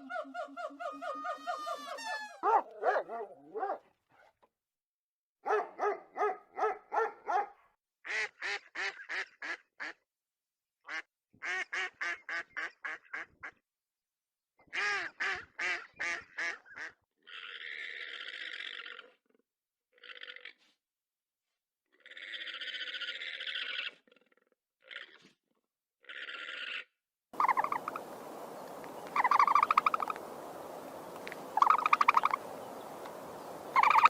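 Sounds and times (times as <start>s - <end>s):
animal honking calls: 0.0s - 3.0s, 31.6s - 32.5s, 33.7s - 34.0s
rough animal call: 0.0s - 3.8s, 26.0s - 28.1s, 29.1s - 30.2s, 31.2s - 33.0s, 33.7s - 34.0s.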